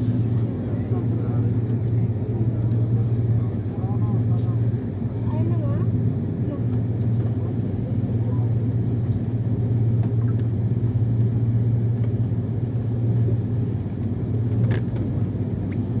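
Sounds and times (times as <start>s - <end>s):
airplane cabin drone: 0.0s - 16.0s.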